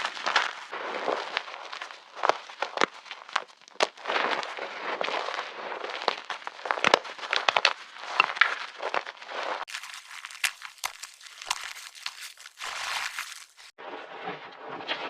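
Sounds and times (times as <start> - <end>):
chalk crunching and crumbling: 0.0 - 13.8.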